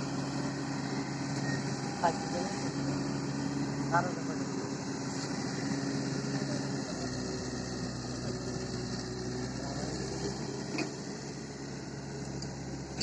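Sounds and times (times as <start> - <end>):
tractor engine running: 0.0 - 13.0.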